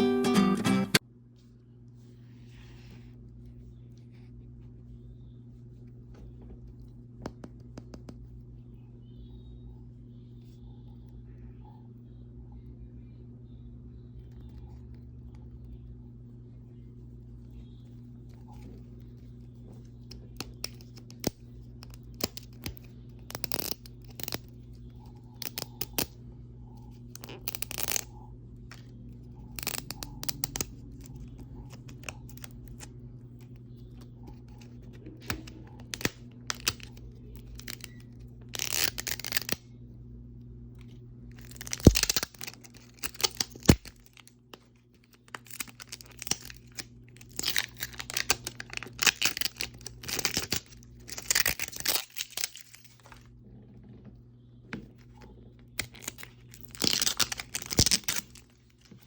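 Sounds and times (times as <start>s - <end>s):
steady low hum: 0.0s - 59.0s
plastic wrapping crinkling: 34.3s - 39.6s, 41.3s - 53.3s, 55.0s - 59.0s.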